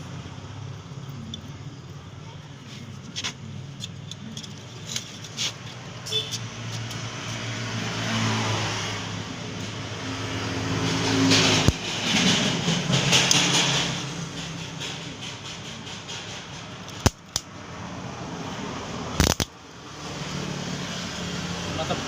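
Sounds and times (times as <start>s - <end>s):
sharp clicks: 16.8s - 17.5s, 19.2s - 19.6s
welding machine humming: 19.2s - 19.5s.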